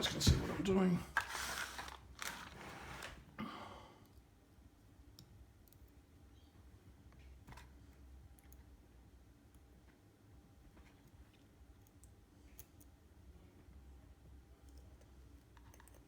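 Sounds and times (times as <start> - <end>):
rustling handling noise: 0.0 - 3.3.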